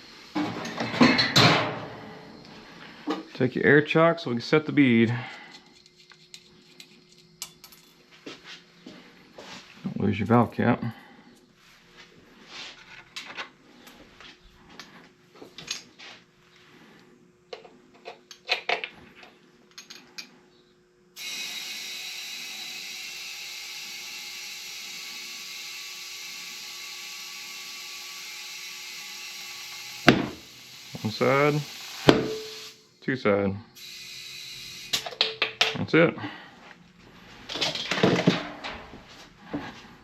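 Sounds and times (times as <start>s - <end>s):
compressed air hissing into tire: 30.1s - 32.8s.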